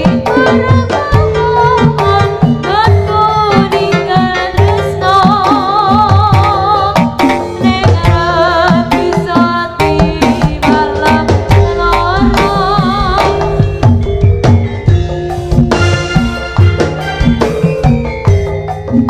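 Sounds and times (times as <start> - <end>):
hand drums busy rhythm: 0.0 - 19.0
high wavering melody: 8.2 - 15.9.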